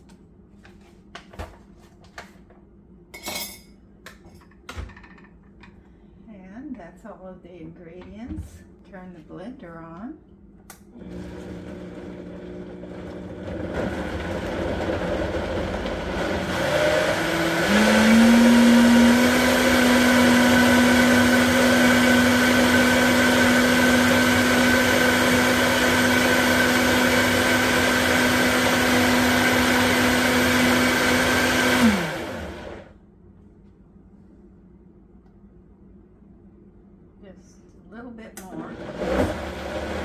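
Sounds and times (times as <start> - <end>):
countertop blender running: 10.9 - 33.0, 38.4 - 40.0.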